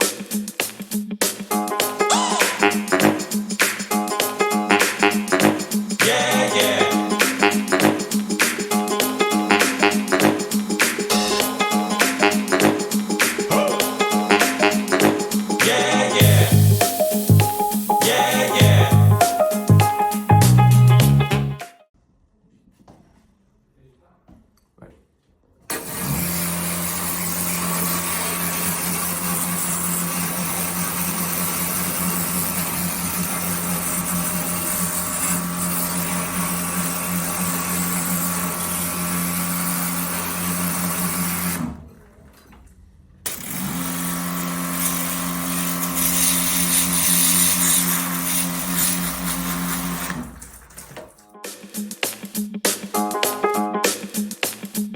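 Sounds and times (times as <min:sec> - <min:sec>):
pump humming: 0:06.6 - 0:20.6
hiss of spray: 0:16.2 - 0:20.3.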